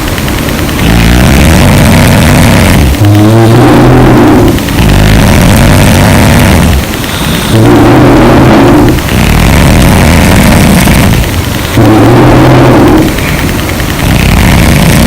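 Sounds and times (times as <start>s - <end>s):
women snoring loudly: 0.8s - 13.4s, 14.0s - 15.0s.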